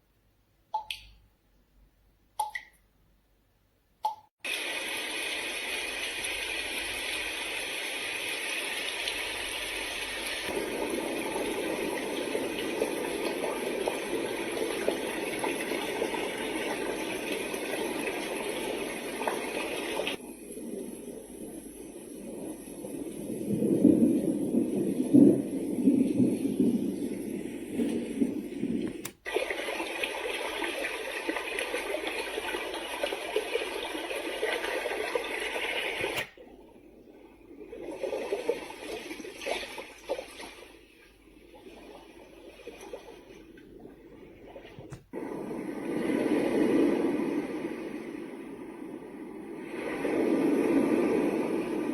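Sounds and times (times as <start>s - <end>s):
running water sound machine: 4.4s - 51.9s
quiet uneven sound: 35.1s - 51.9s.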